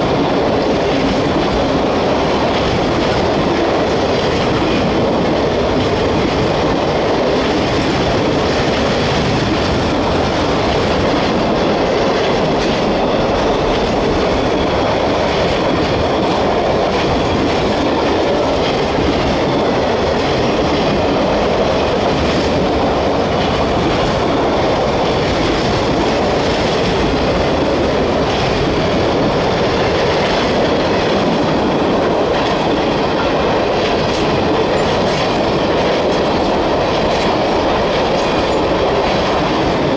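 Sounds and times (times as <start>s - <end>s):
steel wheels rolling on rail: 0.0s - 39.9s
wheels clicking over rail joints: 0.2s - 39.9s.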